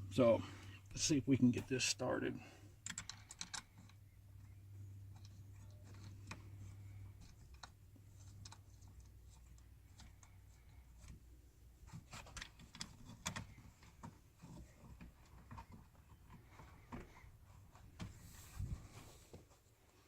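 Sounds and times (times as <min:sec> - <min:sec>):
small metal clicks and taps: 0:02.8 - 0:04.0.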